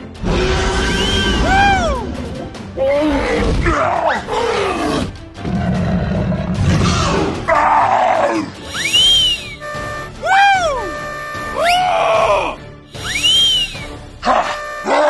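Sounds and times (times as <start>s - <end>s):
background music: 0.0s - 15.0s
cartoon growling roar: 0.2s - 1.8s, 2.9s - 8.5s
gliding whistle: 8.7s - 11.9s, 13.0s - 13.9s.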